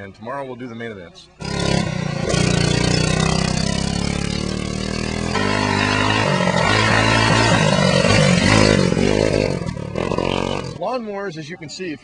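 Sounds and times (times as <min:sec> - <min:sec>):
racing lawnmower engines: 0:01.4 - 0:11.0.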